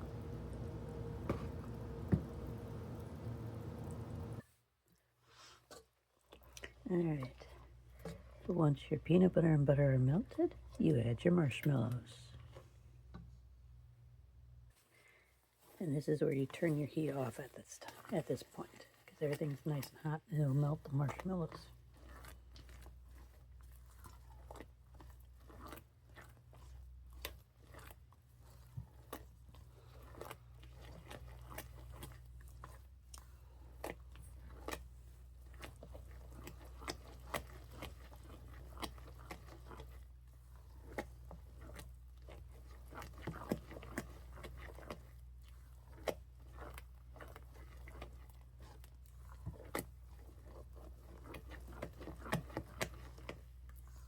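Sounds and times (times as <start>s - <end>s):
low steady hum: 0.0s - 4.4s.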